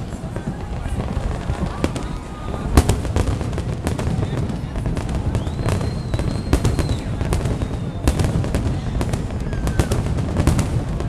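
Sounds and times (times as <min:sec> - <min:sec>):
firework whistle: 0:00.0 - 0:11.0
fireworks bangs and crackles: 0:00.0 - 0:11.0.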